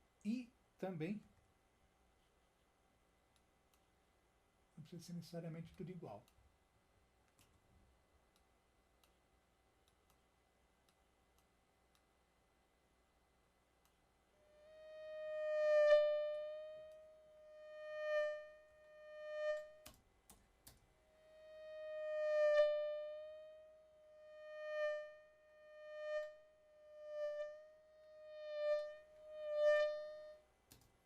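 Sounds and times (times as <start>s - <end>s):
synthesized mosquito buzz: 14.4s - 20.0s, 21.0s - 30.5s.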